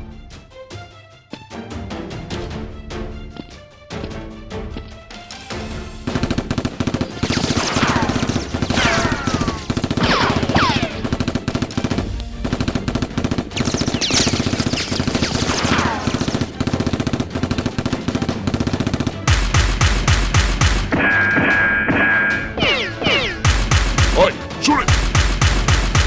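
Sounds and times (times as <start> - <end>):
background music: 0.0 - 26.0
automatic gunfire sound effects: 6.1 - 26.0
heavy shots with deep thumps: 19.3 - 26.0.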